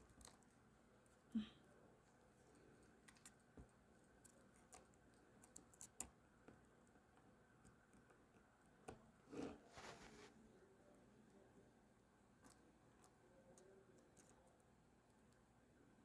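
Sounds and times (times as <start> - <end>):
rustling: 9.3 - 10.4.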